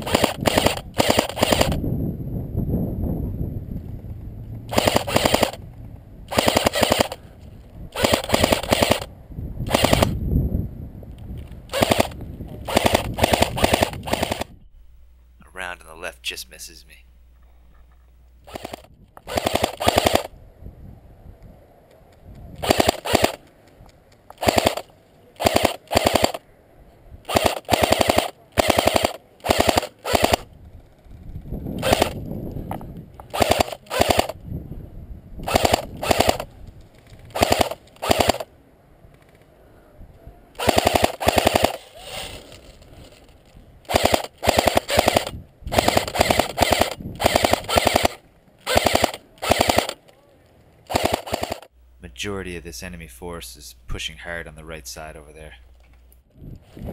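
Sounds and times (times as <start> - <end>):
airsoft rifle bursts: 0.0 - 1.8, 4.7 - 5.6, 6.3 - 7.3, 7.9 - 9.1, 9.7 - 10.2, 11.7 - 14.5, 18.4 - 20.3, 22.6 - 23.5, 24.3 - 26.4, 27.3 - 30.5, 31.8 - 32.2, 33.3 - 34.4, 35.4 - 36.5, 37.2 - 38.5, 40.6 - 43.2, 43.8 - 50.2, 50.8 - 51.7.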